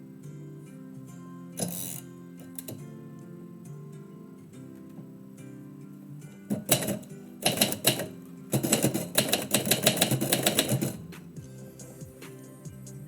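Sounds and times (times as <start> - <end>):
instrumental background music: 0.0 - 13.0
typewriter keys clicking: 6.5 - 11.1.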